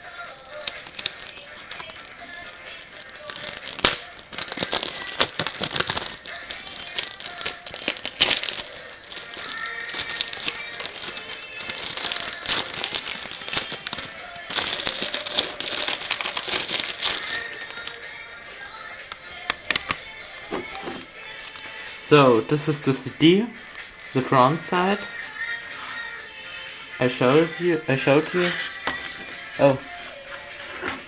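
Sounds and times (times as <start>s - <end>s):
plastic wrap crinkling: 0.0s - 18.2s, 19.3s - 21.9s
background music: 0.0s - 31.0s.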